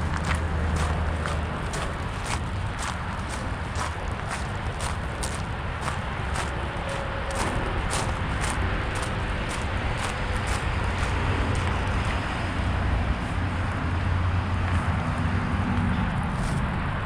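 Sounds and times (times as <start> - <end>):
light footsteps: 0.0 - 12.4
car engine and tyre rumble: 0.0 - 17.0.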